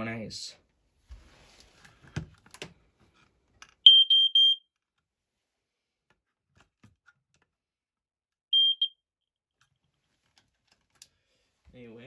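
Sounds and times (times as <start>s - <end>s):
smoke alarm beeps: 3.9s - 4.6s, 8.5s - 9.0s.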